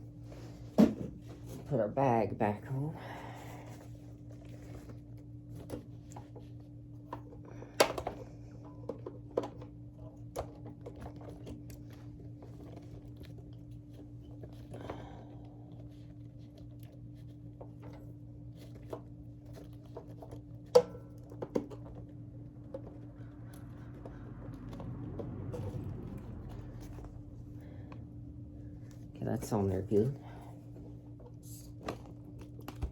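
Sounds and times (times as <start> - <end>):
steady low hum: 0.0 - 32.9
clicks and rustles of handling: 3.7 - 28.0.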